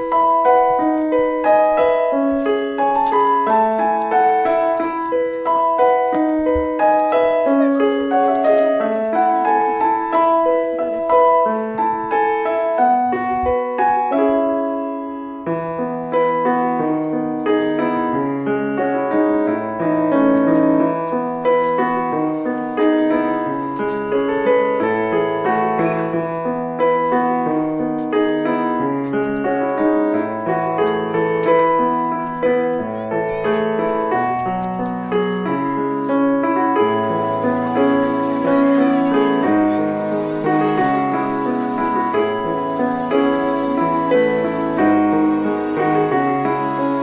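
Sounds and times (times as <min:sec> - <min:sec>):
gentle piano music: 0:00.0 - 0:47.0.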